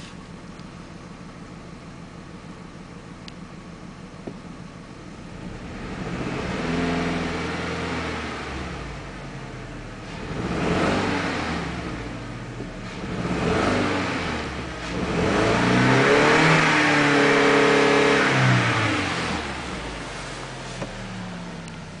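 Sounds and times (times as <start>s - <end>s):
car engine revving: 5.2s - 22.0s.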